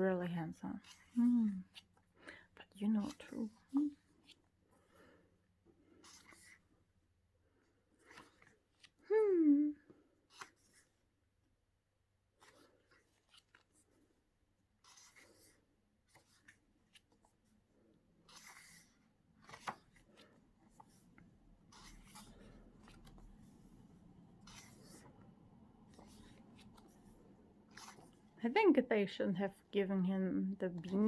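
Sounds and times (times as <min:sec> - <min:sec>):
paper pages rustling: 0:05.9 - 0:06.7, 0:07.8 - 0:09.0, 0:12.2 - 0:14.2, 0:14.8 - 0:28.4, 0:30.7 - 0:31.0.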